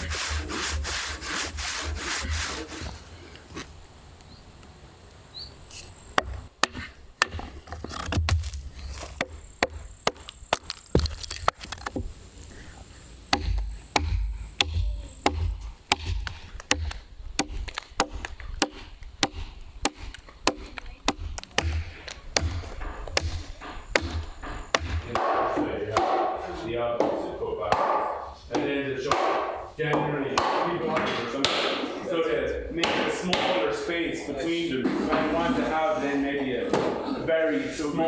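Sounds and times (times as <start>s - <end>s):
hand tool chopping green wood: 0.0s - 3.0s, 5.7s - 34.0s.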